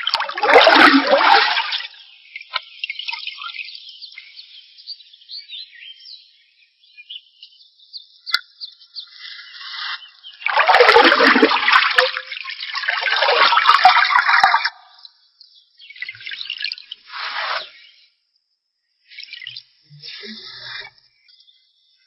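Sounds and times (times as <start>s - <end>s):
water splashing and pouring: 0.0s - 2.0s, 10.4s - 14.9s
small birds chirping: 1.8s - 10.6s, 14.9s - 18.2s, 19.0s - 22.0s.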